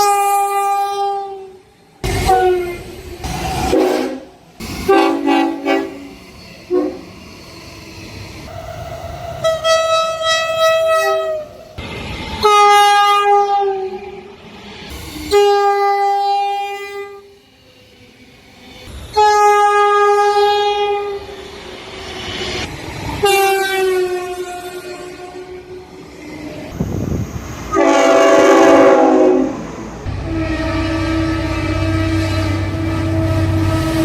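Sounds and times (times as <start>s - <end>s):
locomotive air horn blasts: 2.1s - 2.8s, 3.7s - 7.1s, 9.4s - 11.6s, 27.7s - 34.0s.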